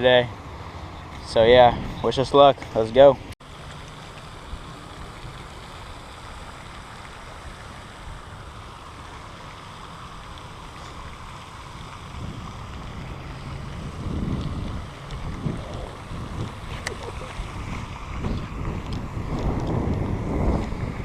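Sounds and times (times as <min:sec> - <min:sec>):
wind buffeting microphone: 0:00.0 - 0:03.3, 0:11.8 - 0:21.0.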